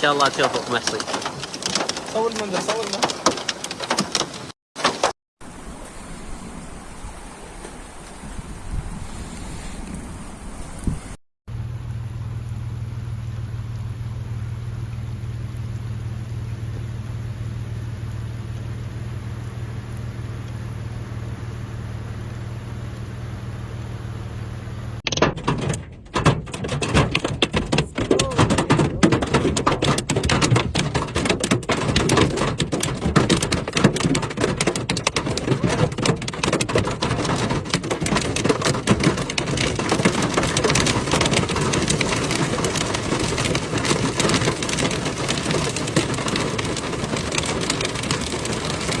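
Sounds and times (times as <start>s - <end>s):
heavy rain falling: 0.0s - 11.2s, 25.3s - 49.0s.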